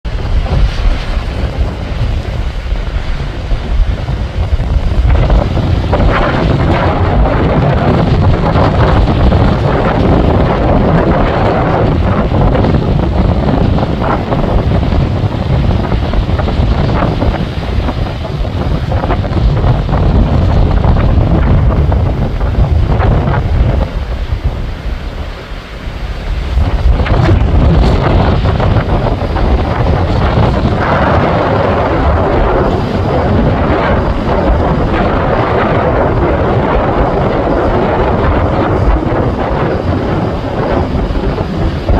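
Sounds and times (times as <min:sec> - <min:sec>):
waves surging: 0:00.0 - 0:41.9
wind buffeting microphone: 0:00.0 - 0:41.9.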